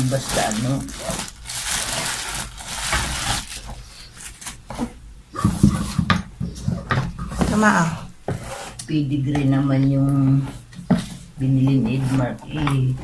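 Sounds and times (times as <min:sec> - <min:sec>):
plastic packaging crinkling: 0:00.0 - 0:04.8.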